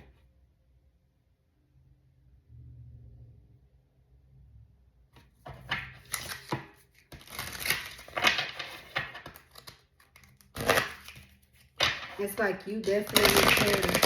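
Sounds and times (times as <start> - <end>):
cards shuffling: 5.2 - 14.0.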